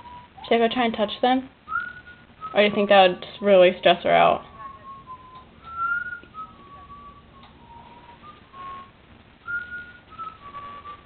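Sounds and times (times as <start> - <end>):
person whistling a tune: 0.0 - 0.5, 1.7 - 2.9, 4.5 - 11.0.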